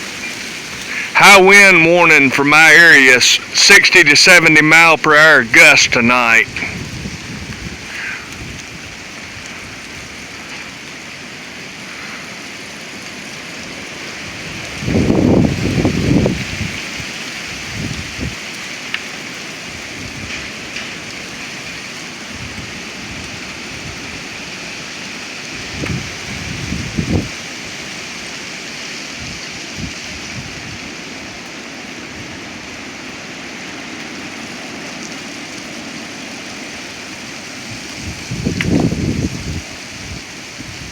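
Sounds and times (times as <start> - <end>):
storm wind rushing through trees: 0.0 - 40.9
strong wind rushing: 4.9 - 9.8, 14.7 - 16.8, 25.6 - 27.3, 37.7 - 40.9
wind buffeting microphone: 6.5 - 10.5, 14.3 - 18.4, 25.5 - 27.4, 37.6 - 40.9.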